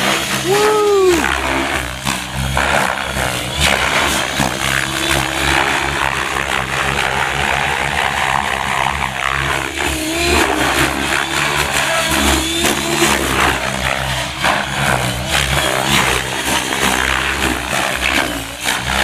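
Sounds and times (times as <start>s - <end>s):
electric motor whine: 0.0s - 19.0s
rotor blades whooshing: 0.0s - 19.0s.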